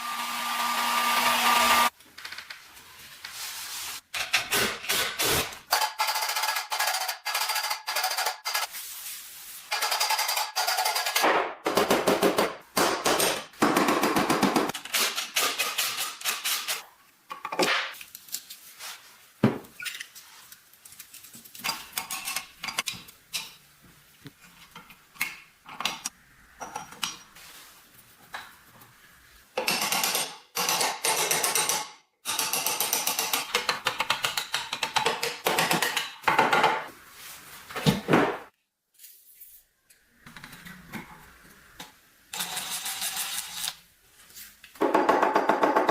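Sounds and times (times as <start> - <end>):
tools clicking and scraping metal: 4.1 - 8.7, 9.7 - 11.2, 14.7 - 16.8, 19.8 - 23.6.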